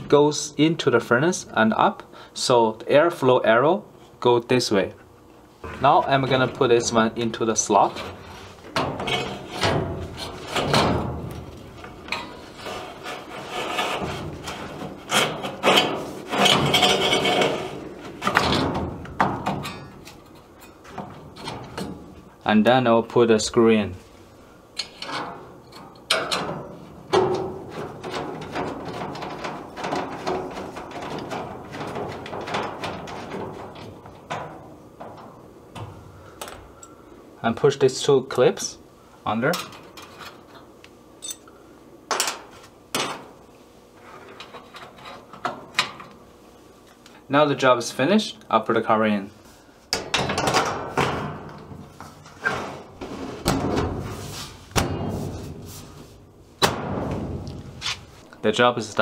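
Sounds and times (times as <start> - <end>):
metal panel knocking and rattling: 8.7 - 12.4, 13.8 - 20.0, 26.1 - 36.0, 53.4 - 54.0, 56.6 - 57.8.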